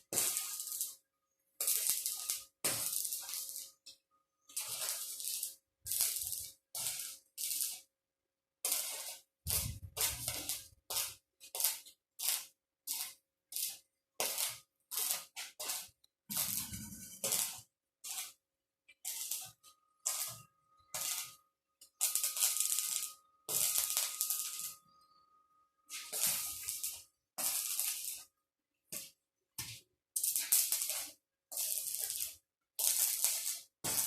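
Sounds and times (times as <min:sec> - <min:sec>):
arc welding crackling bursts: 0:00.0 - 0:01.0, 0:01.6 - 0:03.8, 0:04.5 - 0:07.9, 0:08.6 - 0:18.4, 0:19.0 - 0:24.9, 0:25.9 - 0:28.3, 0:29.6 - 0:34.0.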